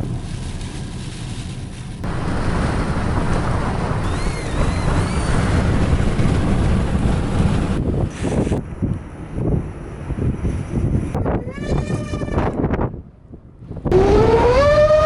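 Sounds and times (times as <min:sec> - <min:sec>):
wind buffeting microphone: 0:02.0 - 0:15.0
faint rising and falling whistles: 0:04.0 - 0:05.5.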